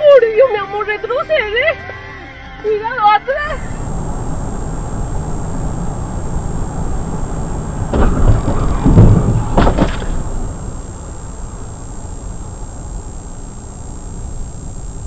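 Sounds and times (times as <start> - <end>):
road and engine rumble: 3.4 - 15.0
rushing surges: 3.6 - 15.0.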